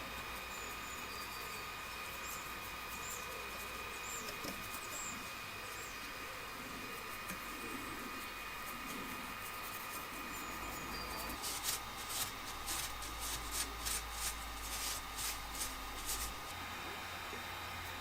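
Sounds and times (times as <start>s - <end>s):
paintbrush scratchy strokes: 6.6s - 16.5s.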